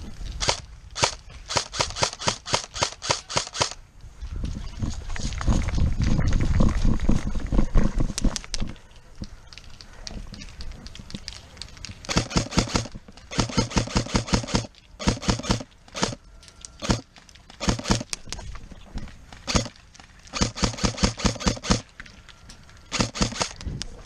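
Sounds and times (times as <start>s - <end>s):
airsoft guns firing bursts: 0.4s - 3.8s, 12.1s - 16.2s, 16.8s - 18.1s, 19.4s - 21.9s, 22.9s - 23.6s.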